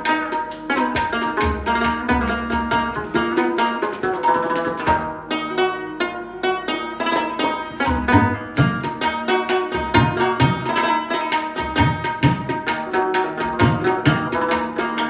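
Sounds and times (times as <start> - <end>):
plucked lute notes: 0.0 - 15.0
tabla bass strokes: 7.7 - 10.7, 11.6 - 15.0.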